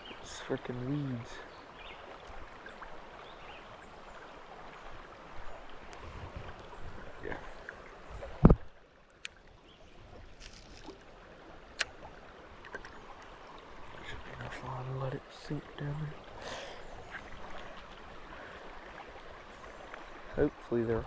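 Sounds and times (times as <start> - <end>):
creek water running: 0.0 - 21.0.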